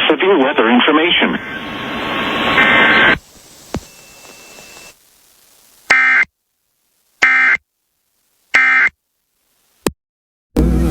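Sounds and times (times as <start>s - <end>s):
buzzy digital data bursts: 1.0s - 6.3s, 7.0s - 7.6s, 8.3s - 8.9s.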